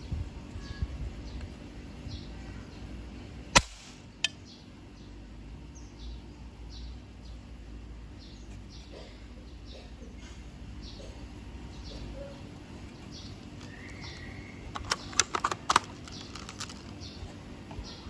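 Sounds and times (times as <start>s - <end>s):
small birds chirping: 0.0s - 18.0s
airsoft gun shot: 3.6s - 4.1s.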